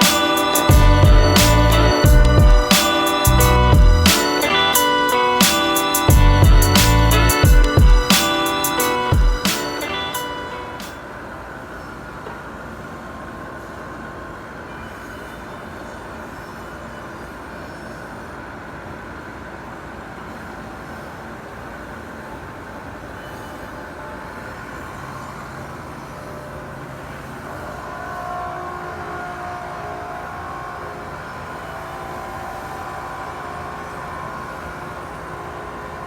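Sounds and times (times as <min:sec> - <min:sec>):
low tone: 0:00.0 - 0:05.4, 0:06.0 - 0:10.8
higher steady tones: 0:00.0 - 0:11.2.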